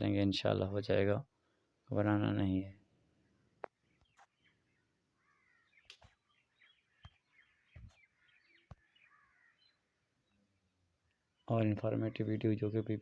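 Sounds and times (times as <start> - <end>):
faint bird chirping: 0.4 - 13.0
soft clicks: 5.8 - 6.2.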